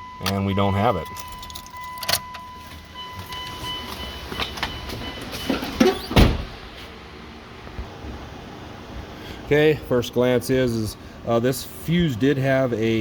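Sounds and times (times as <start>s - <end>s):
electronic warning tone: 0.0s - 5.7s
heavy door thump: 5.8s - 6.6s.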